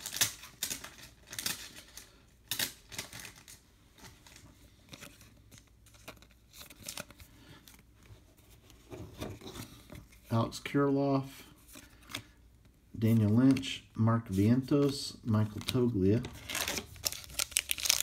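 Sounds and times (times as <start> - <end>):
card rustling against plastic sleeve: 0.0 - 18.0.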